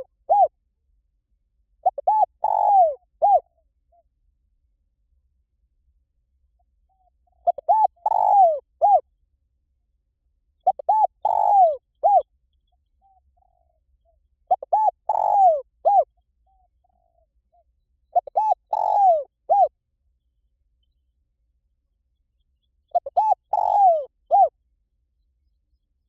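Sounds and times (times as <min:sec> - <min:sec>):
dove cooing: 0:00.0 - 0:00.5, 0:01.8 - 0:03.5, 0:07.0 - 0:09.0, 0:10.6 - 0:12.3, 0:14.5 - 0:19.8, 0:22.9 - 0:24.6
faint soft coos: 0:00.0 - 0:00.5, 0:01.9 - 0:03.5, 0:06.8 - 0:09.0, 0:22.9 - 0:24.5.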